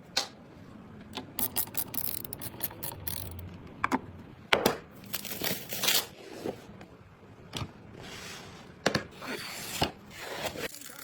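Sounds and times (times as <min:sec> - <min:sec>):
sharp clicks and knocks: 0:01.2 - 0:04.8.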